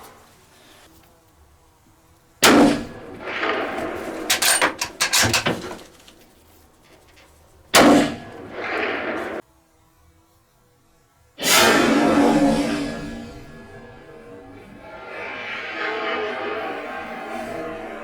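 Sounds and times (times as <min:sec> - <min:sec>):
rifle shots with echo: 0:02.4 - 0:05.3, 0:07.8 - 0:09.4.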